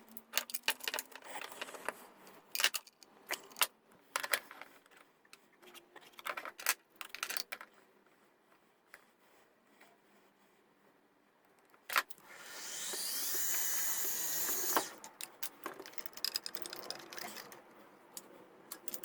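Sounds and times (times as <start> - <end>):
small clicks and knocks of parts: 0.0 - 7.8, 11.4 - 12.2, 12.8 - 19.0
power drill running: 12.2 - 15.0.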